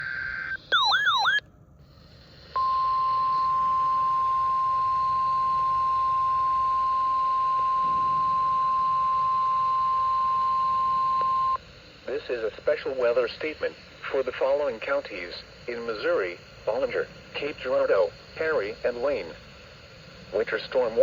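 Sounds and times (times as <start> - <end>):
steady pure warning beep: 0.0 - 1.4, 2.6 - 11.6
faint radio hiss: 0.0 - 4.0, 11.6 - 21.0.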